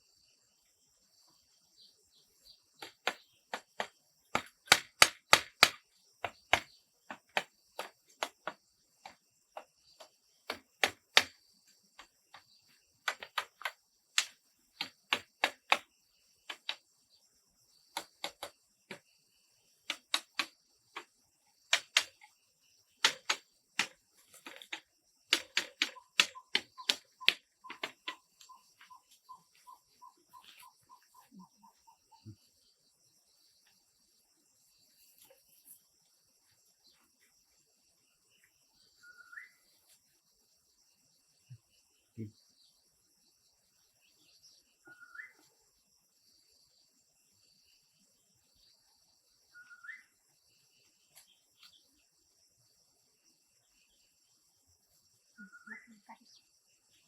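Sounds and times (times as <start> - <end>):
high insect or bird drone: 0.0 - 57.0
sharp knocks and taps: 2.8 - 11.4, 12.0 - 16.9, 17.9 - 19.1, 19.8 - 22.3, 23.0 - 29.1.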